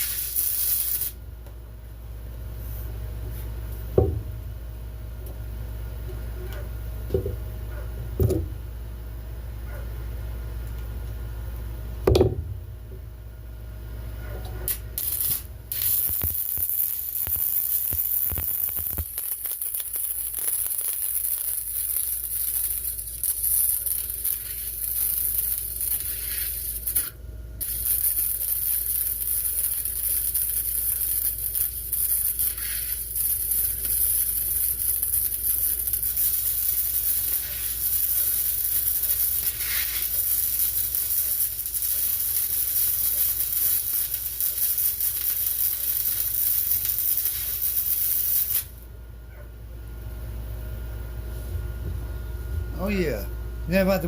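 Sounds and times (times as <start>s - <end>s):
arc welding crackling sizzle: 0.0s - 4.0s, 14.2s - 48.9s, 52.4s - 54.0s.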